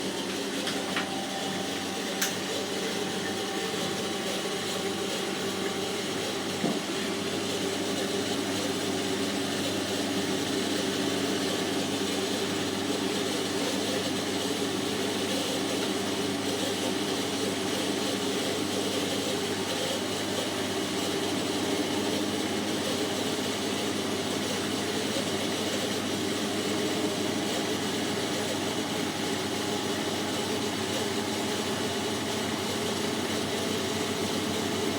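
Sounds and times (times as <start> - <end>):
washing machine spinning: 0.0 - 34.9.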